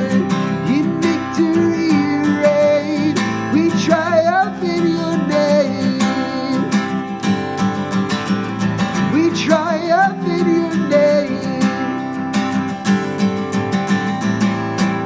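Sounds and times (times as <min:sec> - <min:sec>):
strummed acoustic guitar: 0:00.0 - 0:15.0.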